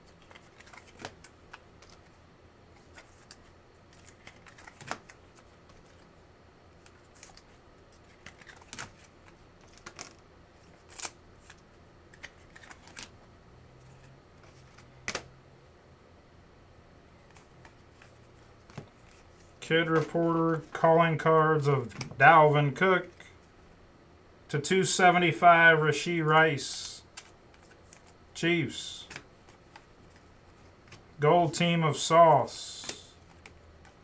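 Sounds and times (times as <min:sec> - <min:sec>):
trading cards clicking and rustling: 0:00.0 - 0:02.2, 0:02.8 - 0:06.1, 0:06.8 - 0:13.2, 0:17.2 - 0:22.4, 0:26.0 - 0:34.0.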